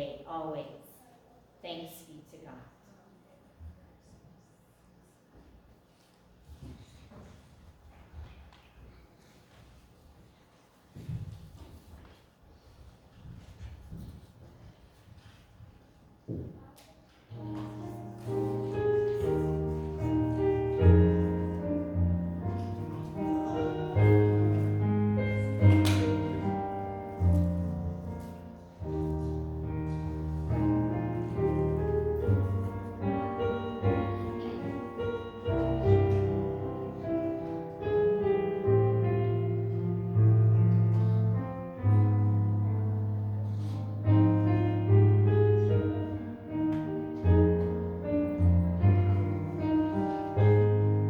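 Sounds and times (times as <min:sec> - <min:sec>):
piano playing slow chords: 0:17.4 - 0:51.0.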